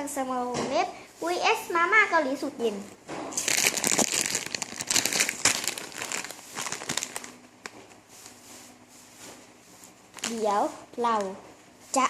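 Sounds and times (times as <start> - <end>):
plastic packet crinkling: 3.3 - 7.8, 10.1 - 10.6.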